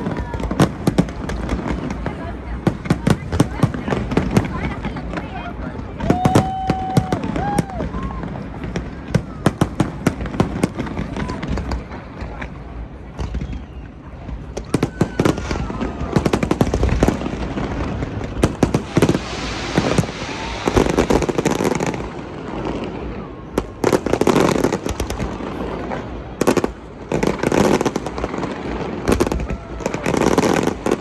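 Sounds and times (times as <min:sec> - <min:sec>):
fireworks banging and crackling: 0:00.0 - 0:31.0.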